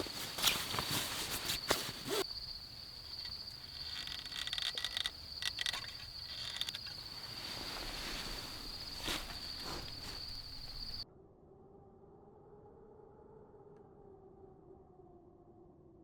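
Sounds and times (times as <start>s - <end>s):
clicks and knocks of handling: 0.0s - 11.0s
insect trill: 0.0s - 11.0s.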